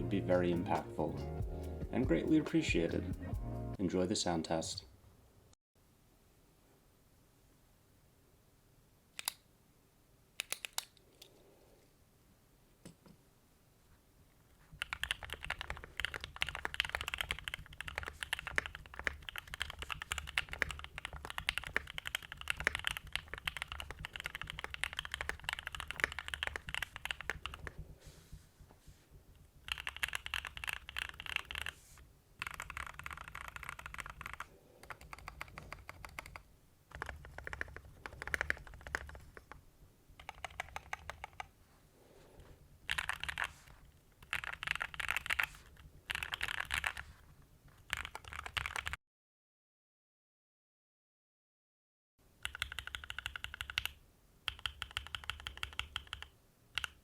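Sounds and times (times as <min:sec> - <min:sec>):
mechanical keyboard typing: 0:10.4 - 0:10.9, 0:14.8 - 0:27.8, 0:29.6 - 0:31.8, 0:32.4 - 0:39.6, 0:40.2 - 0:41.5, 0:42.9 - 0:43.5, 0:44.2 - 0:47.0, 0:47.8 - 0:49.0, 0:52.4 - 0:57.0.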